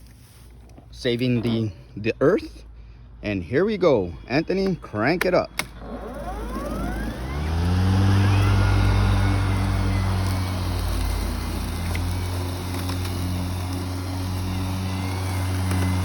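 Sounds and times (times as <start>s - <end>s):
electric lawn mower whine: 4.6s - 16.0s.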